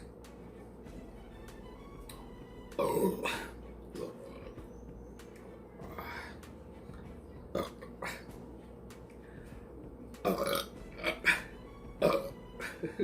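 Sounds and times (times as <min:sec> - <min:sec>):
woman burping: 0:02.8 - 0:04.4, 0:07.5 - 0:08.3, 0:10.2 - 0:13.0.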